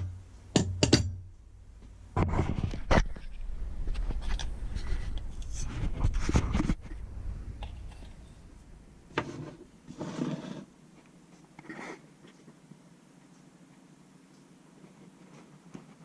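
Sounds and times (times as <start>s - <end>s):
rubbing and scraping handling noise: 1.8s - 12.6s, 14.7s - 16.0s.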